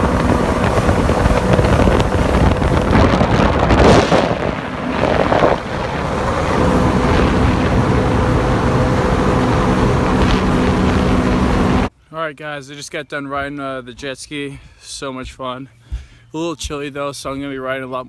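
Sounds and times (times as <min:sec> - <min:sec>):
jet ski engine running: 0:00.0 - 0:11.9
loud rush of noise: 0:00.0 - 0:11.9
wind buffeting microphone: 0:00.0 - 0:11.9.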